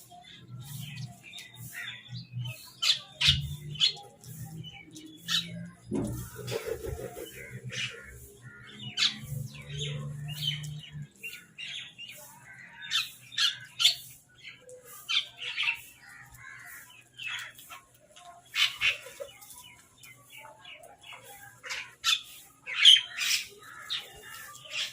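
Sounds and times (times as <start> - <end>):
crows cawing: 16.1 - 16.9.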